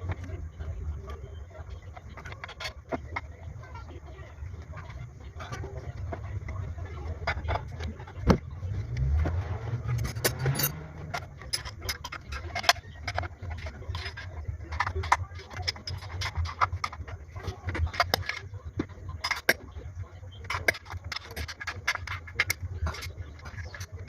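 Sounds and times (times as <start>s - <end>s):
metal tools clinking and rattling: 9.9s - 17.1s.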